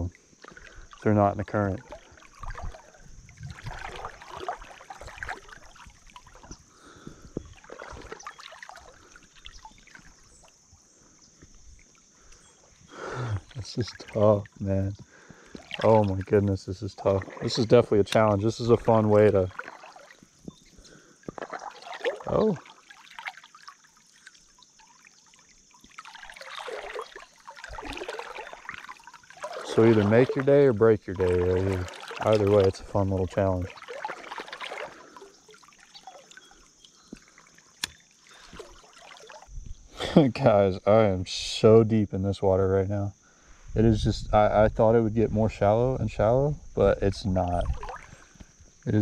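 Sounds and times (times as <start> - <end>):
water sloshing around legs: 0.2 - 39.6, 47.2 - 48.8
fast river current: 1.8 - 7.0, 7.6 - 10.5, 17.0 - 20.4, 21.2 - 39.5.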